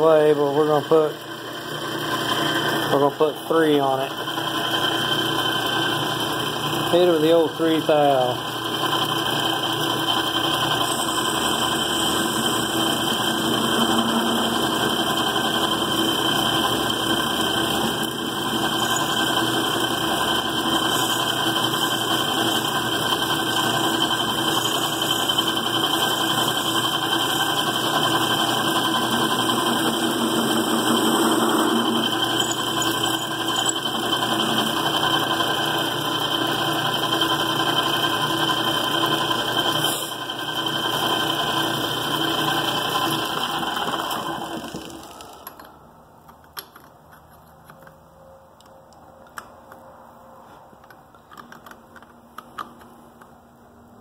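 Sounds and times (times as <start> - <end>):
metal lathe cutting: 0.0 - 45.6.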